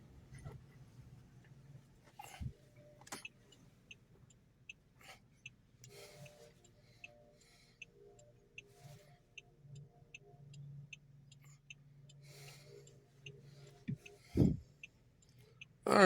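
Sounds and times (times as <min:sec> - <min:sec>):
steady light ticking: 0:02.7 - 0:15.8.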